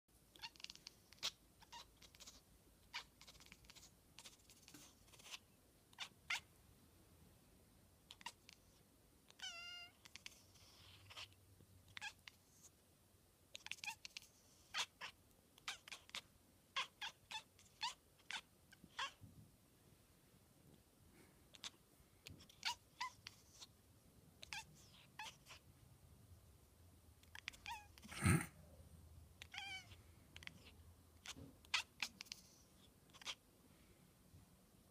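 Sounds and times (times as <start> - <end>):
cat chattering chirps: 0.3 - 6.5, 8.1 - 12.5, 13.6 - 19.2, 27.2 - 28.5, 29.4 - 33.4.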